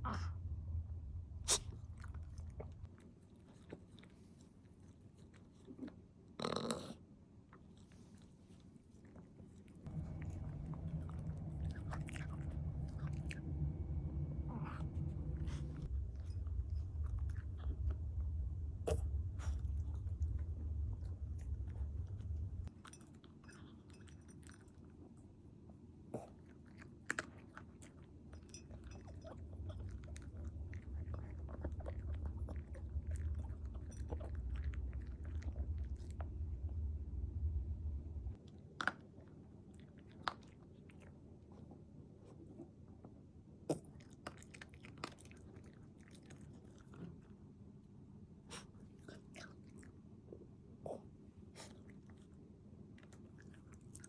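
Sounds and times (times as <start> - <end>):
low rumble: 0.0 - 3.1, 9.9 - 22.9, 27.8 - 38.6
dog chewing and crunching food: 1.5 - 36.8, 38.3 - 42.8, 43.7 - 47.5, 48.5 - 54.0.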